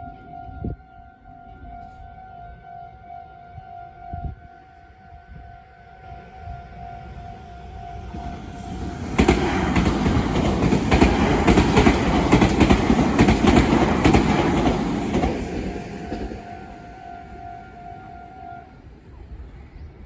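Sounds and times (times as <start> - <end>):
train wheels clattering over rails: 8.4 - 16.6.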